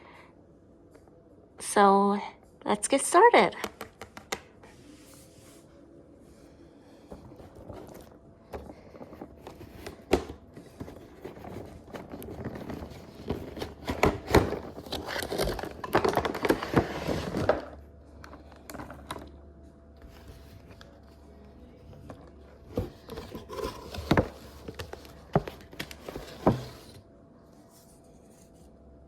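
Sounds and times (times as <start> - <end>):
packaging rustling and crinkling: 7.2 - 19.3, 22.7 - 27.0.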